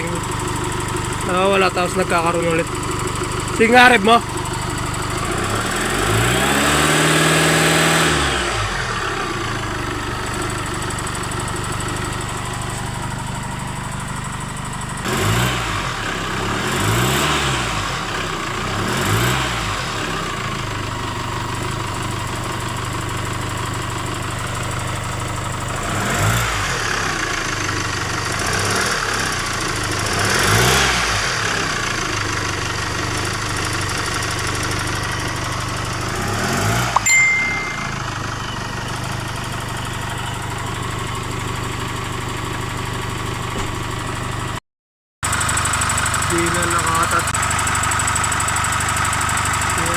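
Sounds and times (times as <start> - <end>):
engine ticking knock: 0.0 - 15.5, 45.2 - 49.9
diesel engine revving: 0.0 - 21.7, 24.4 - 37.0.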